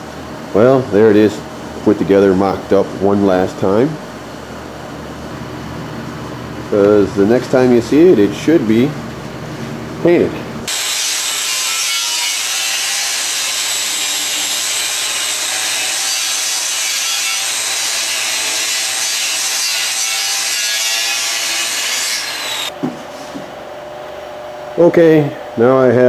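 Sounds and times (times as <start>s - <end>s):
power sander on steel: 10.7s - 22.7s.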